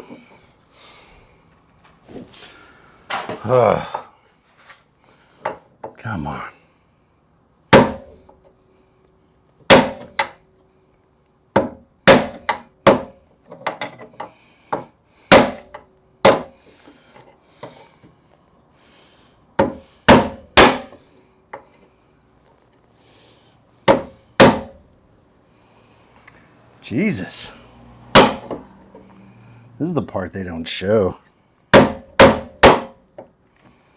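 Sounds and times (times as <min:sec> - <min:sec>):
hammer striking metal: 0:19.6 - 0:21.0, 0:28.1 - 0:28.6.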